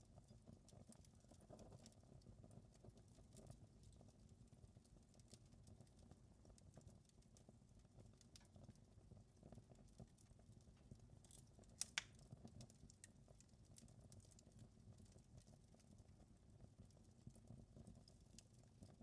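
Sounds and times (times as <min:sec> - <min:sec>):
fire popping and snapping: 0:00.0 - 0:19.0
wood fire crackling: 0:00.0 - 0:19.0.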